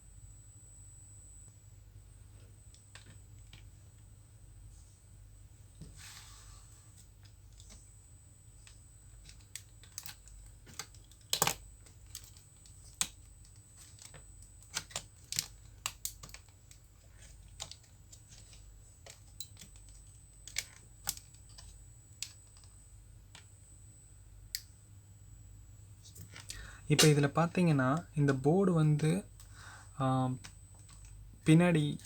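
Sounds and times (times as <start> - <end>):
faint steady hum: 0.0 - 32.0
clicks and taps of laptop parts: 9.2 - 16.6.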